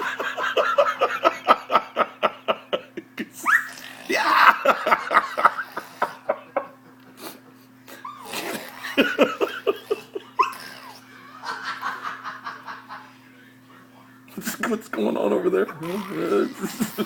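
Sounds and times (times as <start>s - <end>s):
baby laughing and squealing: 3.4s - 4.4s.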